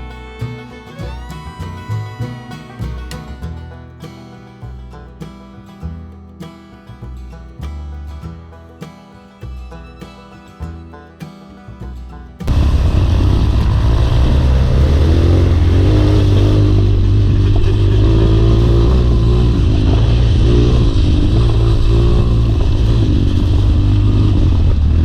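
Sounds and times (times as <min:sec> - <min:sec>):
motorcycle engine revving: 0:12.4 - 0:25.0.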